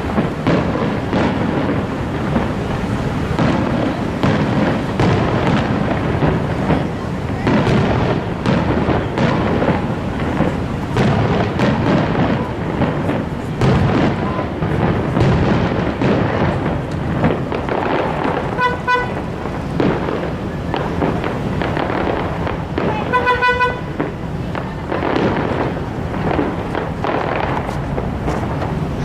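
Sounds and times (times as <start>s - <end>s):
fireworks booming and crackling: 0.0s - 29.0s
horn toot: 18.6s - 19.3s, 23.0s - 23.9s.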